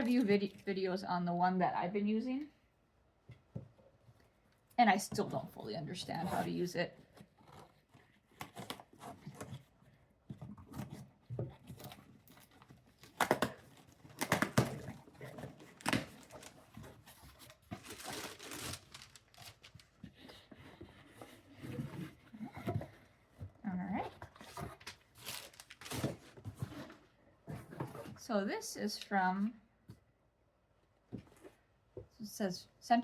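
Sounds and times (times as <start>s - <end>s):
packaging ripping and crinkling: 12.3s - 20.0s, 24.8s - 26.3s.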